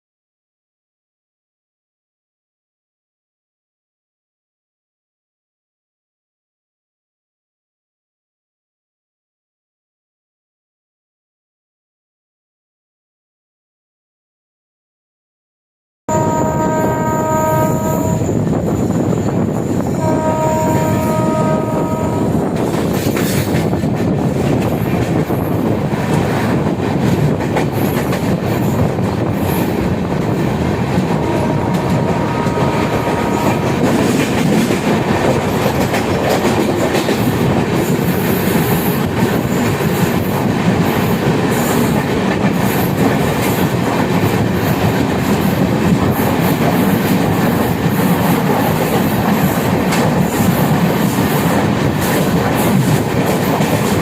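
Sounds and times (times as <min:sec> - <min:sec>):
train rumbling on rails: 0:16.1 - 0:54.0.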